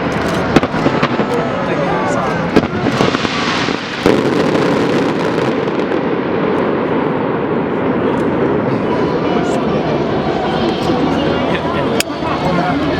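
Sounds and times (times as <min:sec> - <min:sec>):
dense din of fireworks: 0:00.0 - 0:12.9
firework bang: 0:00.4 - 0:01.4, 0:02.4 - 0:08.8.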